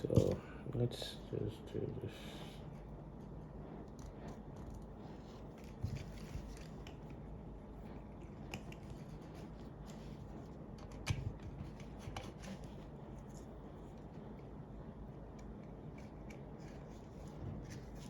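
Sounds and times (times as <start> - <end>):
low background hum: 0.0 - 18.0
clicks and taps of components: 8.3 - 9.0, 10.7 - 12.6.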